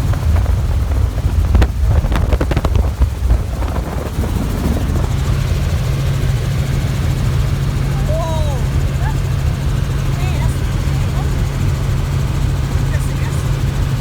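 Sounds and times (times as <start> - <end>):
helicopter rotor and engine drone: 0.0 - 14.0
steady low hum: 0.0 - 14.0.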